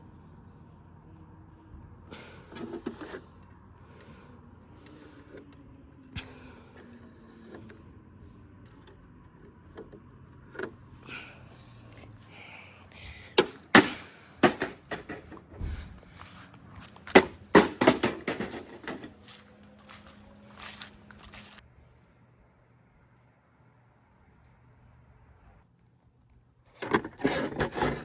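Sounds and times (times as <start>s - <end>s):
plastic toy being smashed: 13.4s - 15.4s, 17.1s - 19.1s.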